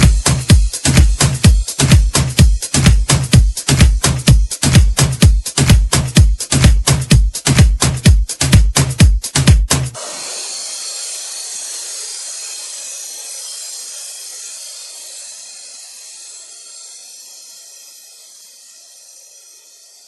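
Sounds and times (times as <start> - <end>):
electronic dance beat: 0.0 - 18.4
long hissing noise wash: 10.0 - 20.0.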